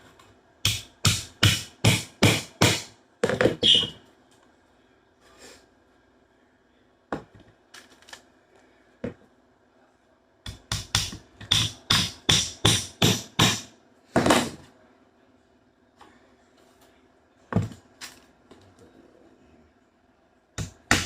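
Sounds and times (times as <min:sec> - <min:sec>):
hammer nailing soft wood: 0:00.6 - 0:02.9, 0:10.5 - 0:13.7.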